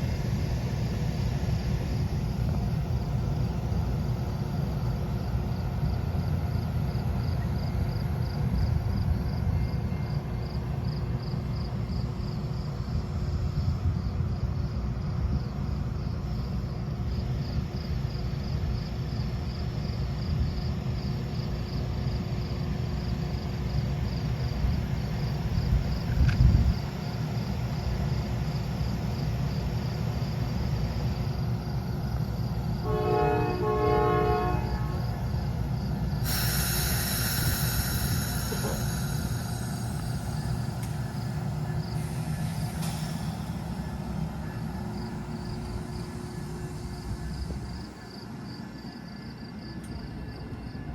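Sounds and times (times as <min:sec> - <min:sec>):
crickets chirping: 0:00.0 - 0:50.9
diesel train rumbling: 0:00.0 - 0:50.9
train horn blasts: 0:32.8 - 0:35.3
hiss: 0:36.0 - 0:47.7.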